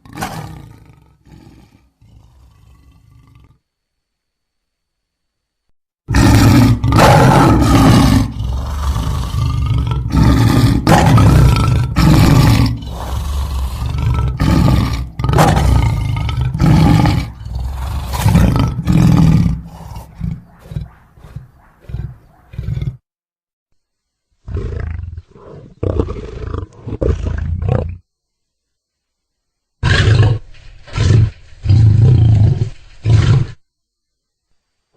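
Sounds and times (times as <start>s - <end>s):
lion roaring and grunting: 0.0s - 3.6s, 6.1s - 23.0s, 24.5s - 28.0s, 29.8s - 33.6s.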